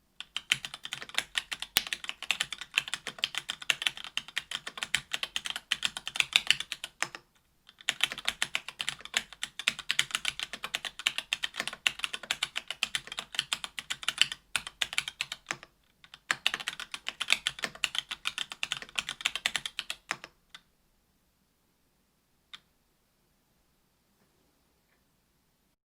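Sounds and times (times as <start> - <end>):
mechanical keyboard typing: 0.2 - 20.4.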